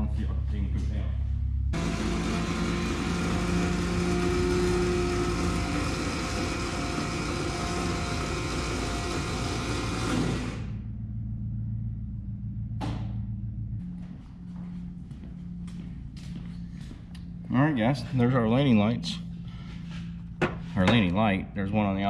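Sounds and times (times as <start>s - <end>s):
low hum: 0.0s - 22.0s
electric motor whirring: 1.8s - 10.9s.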